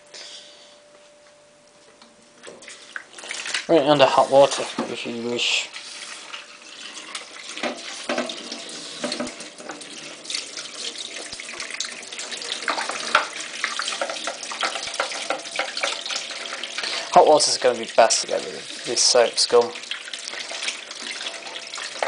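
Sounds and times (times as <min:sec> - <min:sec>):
tap water splashing: 0:04.4 - 0:05.0, 0:06.3 - 0:22.0.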